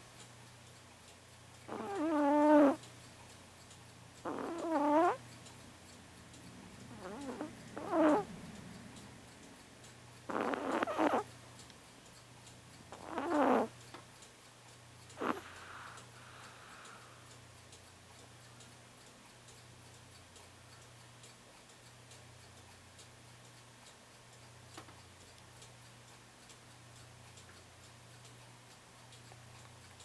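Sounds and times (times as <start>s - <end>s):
clock ticking: 0.0s - 30.0s
cat purring: 1.7s - 2.8s, 4.2s - 5.2s, 6.8s - 9.1s, 10.3s - 11.3s, 12.9s - 13.7s, 15.2s - 17.1s.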